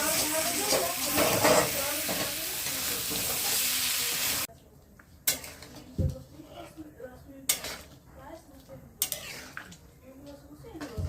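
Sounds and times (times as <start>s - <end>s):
food sizzling in hot oil: 0.0s - 4.5s.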